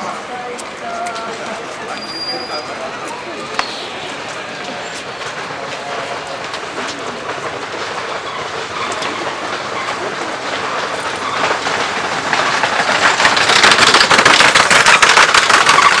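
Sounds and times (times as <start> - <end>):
train rolling past: 0.0 - 16.0
wheels clacking over rail joints: 0.0 - 16.0.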